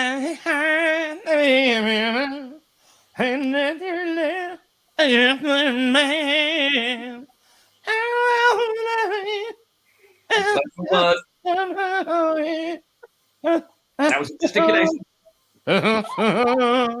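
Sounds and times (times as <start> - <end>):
man humming: 10.3 - 12.8, 13.4 - 15.0, 15.8 - 17.0.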